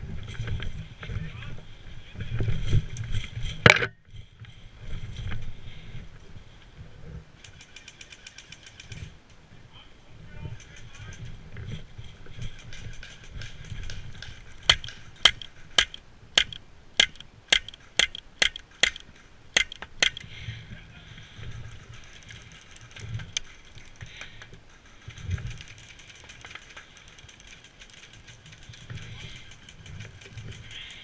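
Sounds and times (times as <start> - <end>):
steady background hiss: 0.0 - 31.0
airsoft gun shots: 14.7 - 19.0.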